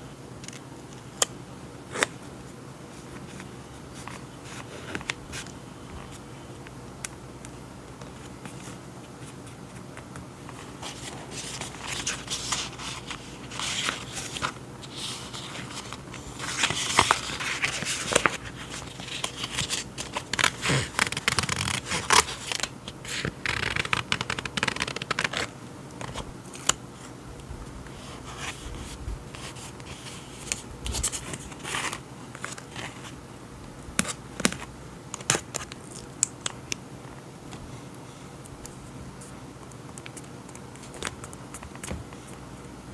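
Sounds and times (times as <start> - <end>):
paper and packaging rustling: 8.0 - 26.7.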